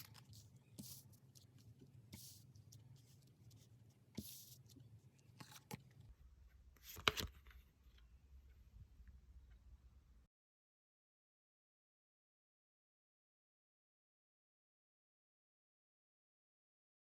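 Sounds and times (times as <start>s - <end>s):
cards rustling and tapping: 4.2s - 5.9s, 6.8s - 7.5s.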